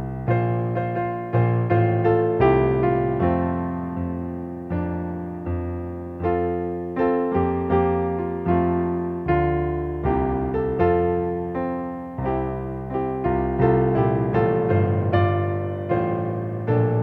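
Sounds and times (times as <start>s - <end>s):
solo piano music: 0.0s - 17.0s.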